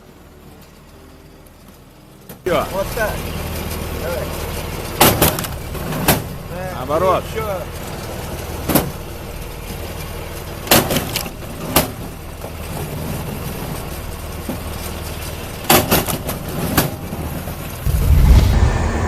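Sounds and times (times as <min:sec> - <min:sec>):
deep engine rumble: 0:17.8 - 0:19.0
machine engine running: 0:17.9 - 0:19.0.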